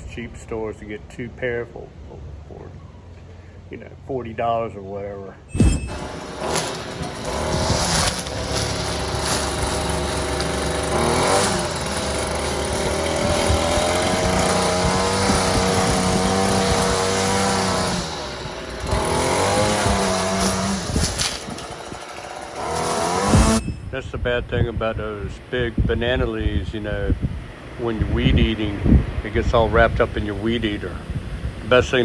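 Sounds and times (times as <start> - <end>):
string trimmer engine running: 5.9 - 23.7.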